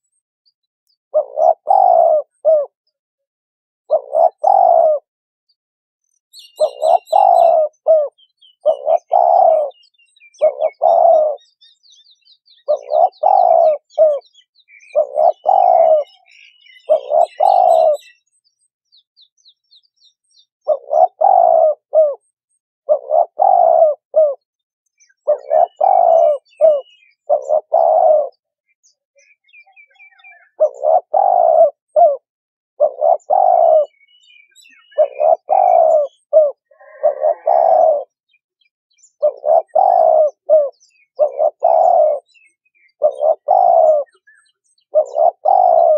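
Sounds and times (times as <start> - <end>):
dove cooing: 1.1 - 3.0, 3.9 - 5.1, 6.4 - 11.6, 12.5 - 18.2, 20.6 - 24.4, 25.0 - 28.5, 29.7 - 38.4, 39.1 - 45.9
small birds chirping faintly: 6.0 - 32.2, 32.8 - 45.9.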